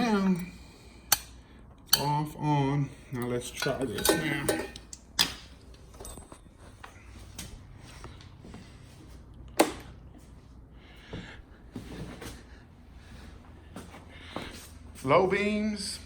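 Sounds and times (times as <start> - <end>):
low steady hum: 0.0 - 16.0.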